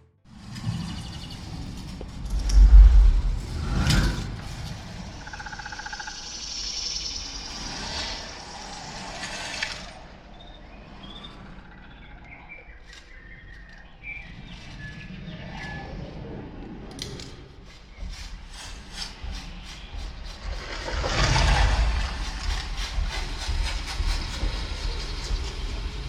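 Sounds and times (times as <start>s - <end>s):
whooshing sweeps: 2.1s - 5.4s
deep bass boom: 2.3s - 4.4s.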